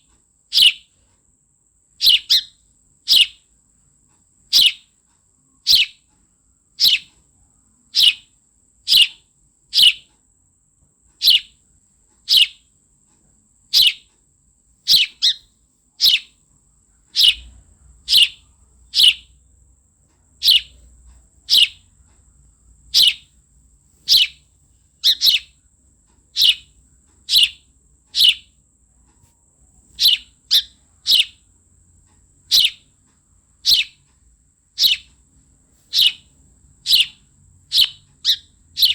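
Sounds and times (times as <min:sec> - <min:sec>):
sparrow chirping: 0:00.5 - 0:01.0, 0:02.0 - 0:03.5, 0:04.4 - 0:04.9, 0:05.6 - 0:06.1, 0:06.7 - 0:07.2, 0:07.8 - 0:10.1, 0:11.2 - 0:11.6, 0:12.2 - 0:12.7, 0:13.6 - 0:14.1, 0:14.8 - 0:16.4, 0:17.0 - 0:19.5, 0:20.4 - 0:25.7, 0:26.3 - 0:28.6, 0:29.8 - 0:31.6, 0:32.2 - 0:38.9.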